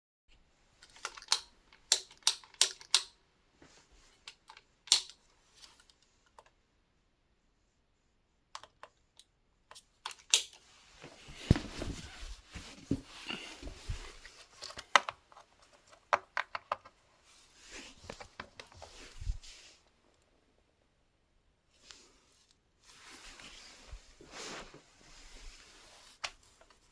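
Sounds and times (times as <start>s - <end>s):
handling rustle and knocks: 10.6s - 20.0s, 21.8s - 26.9s.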